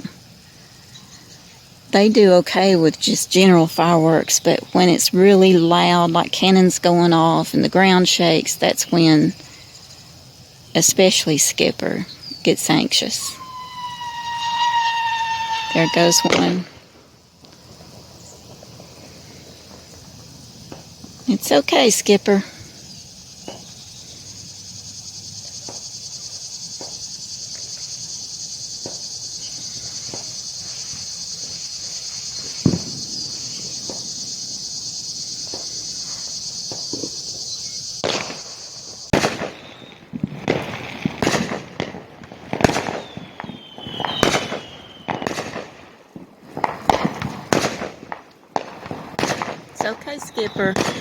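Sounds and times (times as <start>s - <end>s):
insects chirring: 0.0s - 51.0s
firework bangs and crackles: 12.7s - 23.9s, 25.5s - 28.0s, 28.6s - 51.0s.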